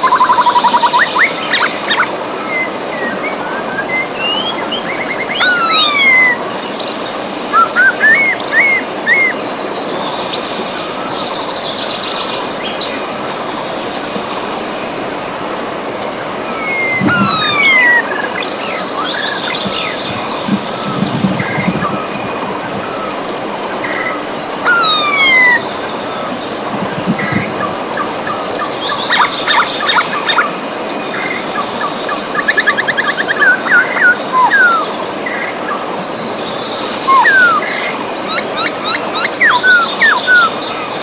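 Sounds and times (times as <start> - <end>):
river water running: 0.0 - 41.0
songbirds calling: 0.0 - 41.0.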